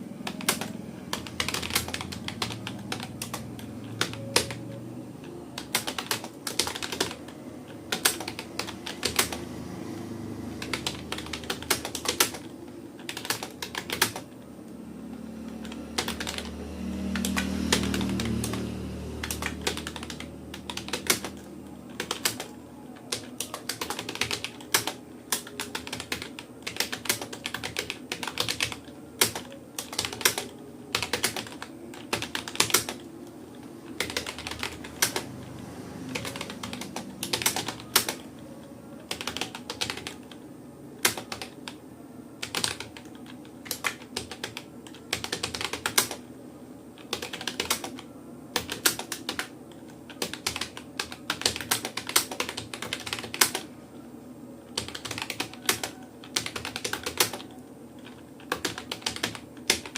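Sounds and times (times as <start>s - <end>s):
keyboard typing clicks: 0.2s - 9.4s, 10.6s - 14.3s, 15.4s - 16.6s, 17.2s - 33.1s, 34.0s - 40.4s, 41.0s - 41.8s, 42.4s - 46.2s, 47.0s - 49.5s, 50.1s - 53.7s, 54.7s - 59.9s.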